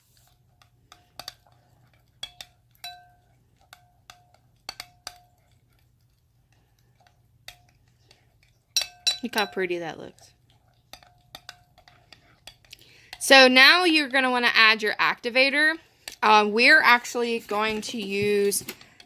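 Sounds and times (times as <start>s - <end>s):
spoon clinking against a bowl: 2.2s - 5.6s, 8.7s - 9.7s.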